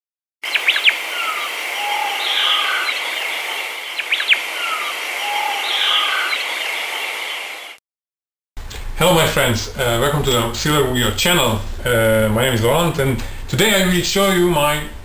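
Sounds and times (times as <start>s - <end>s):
steady hiss: 0.4s - 7.8s
birds chirping and whistling: 0.5s - 7.8s.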